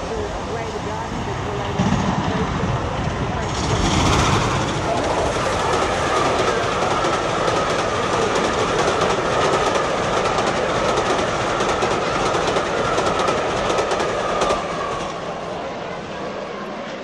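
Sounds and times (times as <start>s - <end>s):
model train whine: 0.0s - 17.0s
model train wheels clicking: 3.4s - 15.2s.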